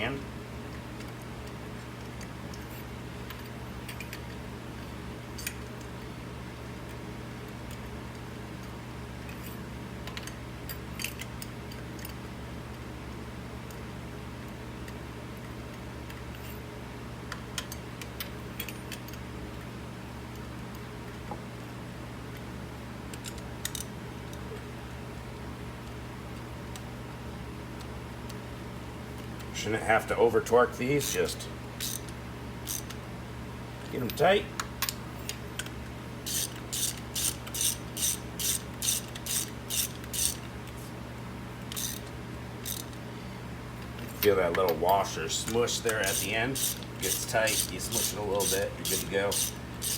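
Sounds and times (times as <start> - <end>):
steady low hum: 23.6 - 49.9
ratchet clicking: 31.8 - 32.9, 36.3 - 40.5, 41.7 - 42.9, 45.9 - 49.9.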